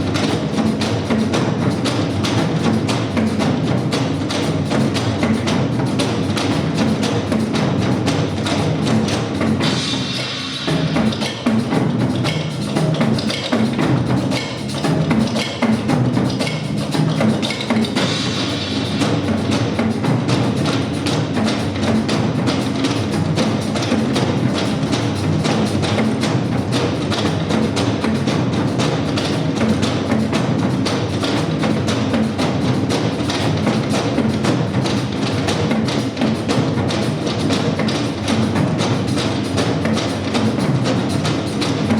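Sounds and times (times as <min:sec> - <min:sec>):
many drums in fast rhythm: 0:00.0 - 0:41.9
bright hissing wash: 0:09.2 - 0:12.8.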